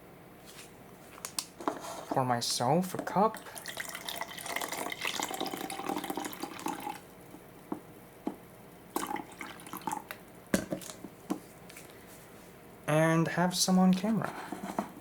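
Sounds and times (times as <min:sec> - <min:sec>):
liquid pouring into a cup: 0:03.3 - 0:07.1, 0:08.9 - 0:11.0.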